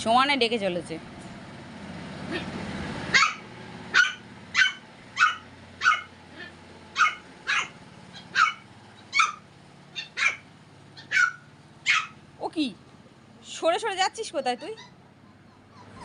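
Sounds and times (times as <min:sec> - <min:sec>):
puppy yipping: 0:03.1 - 0:06.1, 0:07.0 - 0:12.2, 0:14.5 - 0:16.0.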